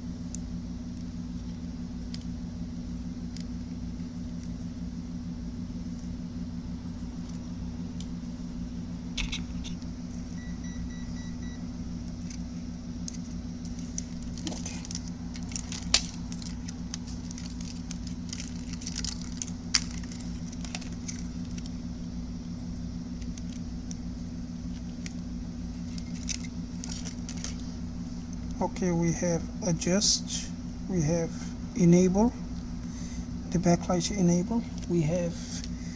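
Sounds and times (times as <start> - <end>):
steady low hum: 0.0 - 35.9
small wires and tools rattling: 9.0 - 10.2, 12.1 - 30.2.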